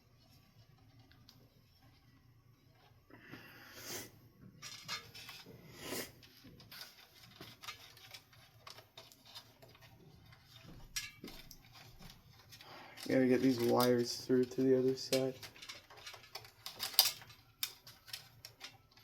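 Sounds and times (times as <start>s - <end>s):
hands clicking and tapping on parts: 10.5s - 19.0s.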